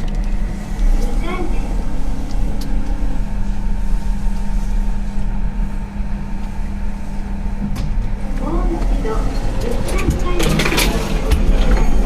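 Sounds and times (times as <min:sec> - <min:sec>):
constant low rumble: 0:00.0 - 0:12.0
elevator speaker low drone: 0:00.0 - 0:12.0.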